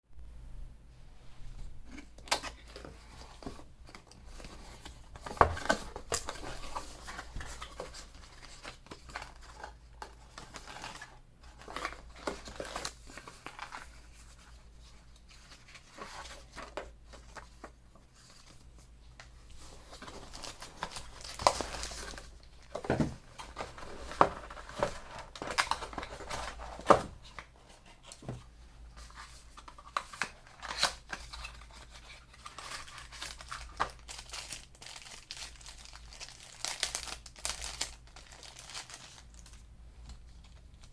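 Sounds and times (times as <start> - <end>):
packaging crinkling and tearing: 19.6 - 28.1, 29.1 - 40.9.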